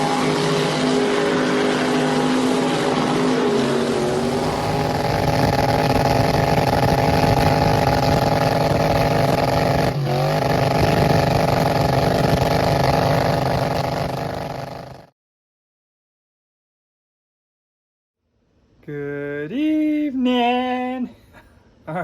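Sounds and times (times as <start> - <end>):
engine at high revs: 0.0 - 15.1.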